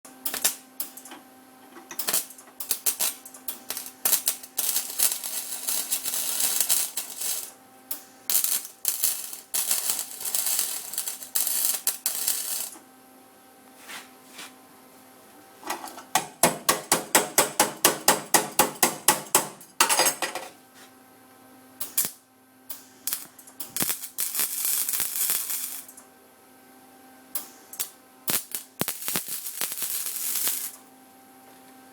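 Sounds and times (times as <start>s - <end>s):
welding arc crackling: 0.1s - 1.1s, 2.0s - 12.8s, 21.8s - 26.0s, 27.4s - 30.9s.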